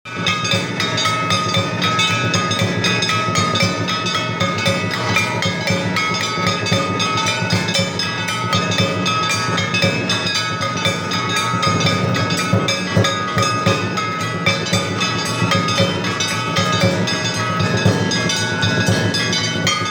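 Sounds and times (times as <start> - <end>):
hand cymbals clanging: 0.0 - 19.9
temple bells clanging: 0.0 - 19.9
pulsing drumbeat: 0.1 - 19.9.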